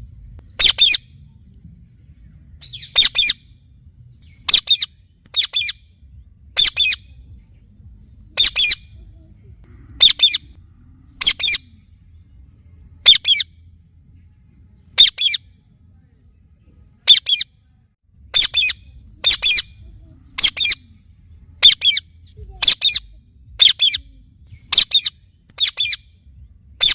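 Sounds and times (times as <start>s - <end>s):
parakeet squawking: 0.6s - 1.0s, 2.6s - 3.4s, 4.5s - 5.8s, 6.6s - 7.2s, 8.4s - 8.9s, 10.0s - 10.6s, 11.2s - 11.7s, 13.0s - 13.5s, 15.0s - 15.4s, 17.0s - 17.4s, 18.3s - 19.8s, 20.4s - 20.9s, 21.6s - 26.0s.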